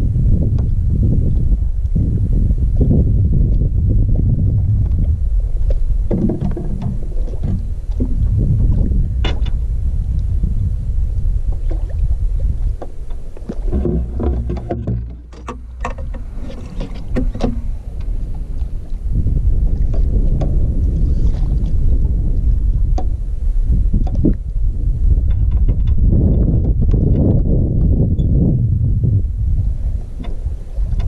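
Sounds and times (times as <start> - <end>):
wind buffeting microphone: 0.0 - 31.0
knocks and clatter: 13.6 - 17.7.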